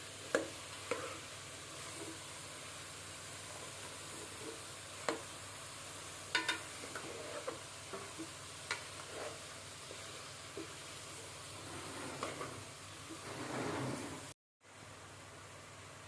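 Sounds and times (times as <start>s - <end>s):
vegetables sizzling in a pan: 0.0s - 16.0s
spoon clinking and scraping pan: 0.3s - 1.2s, 6.3s - 9.5s.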